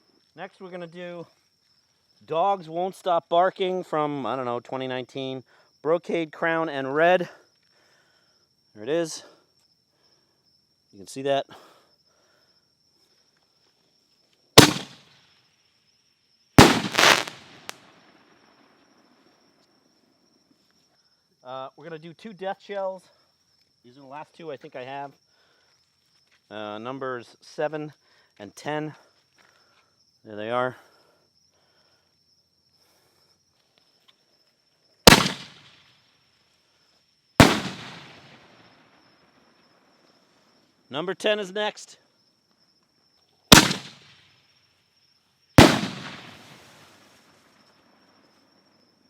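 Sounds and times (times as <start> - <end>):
crickets chirring: 0.0 - 49.0
firework booms: 14.6 - 15.0, 16.6 - 17.8, 35.1 - 35.7, 37.4 - 38.5, 43.5 - 44.0, 45.6 - 46.8
firework crackling pops: 14.6 - 15.2, 16.6 - 18.2, 35.1 - 35.9, 37.4 - 38.6, 43.5 - 44.3, 45.6 - 47.3.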